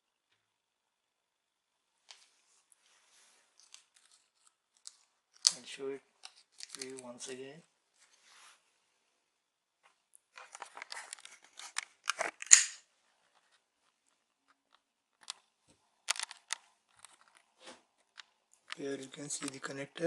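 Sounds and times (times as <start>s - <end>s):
cable crackling: 13.4s - 20.0s.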